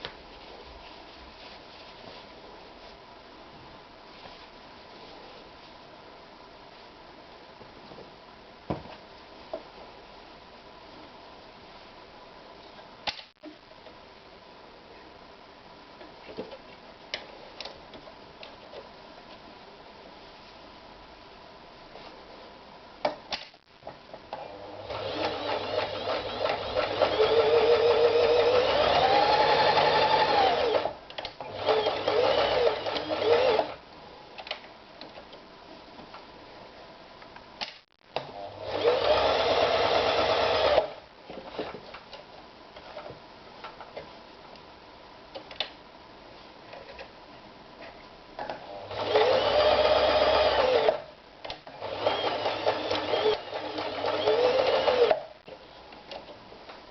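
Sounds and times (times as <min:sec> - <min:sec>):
sewing machine stitching: 0:24.9 - 0:33.8, 0:51.7 - 0:55.2.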